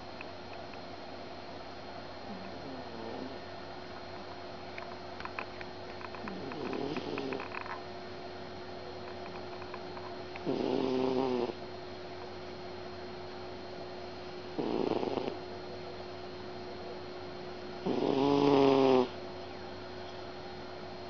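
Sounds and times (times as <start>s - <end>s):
faint steady hum: 0.0s - 21.0s
cat snoring: 2.6s - 3.3s, 6.3s - 7.4s, 10.4s - 11.6s, 14.6s - 15.4s, 17.8s - 19.2s.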